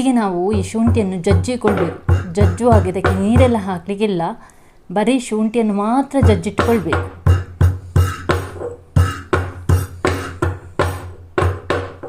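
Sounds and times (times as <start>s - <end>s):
ginger pounded on stone: 0.6s - 3.6s.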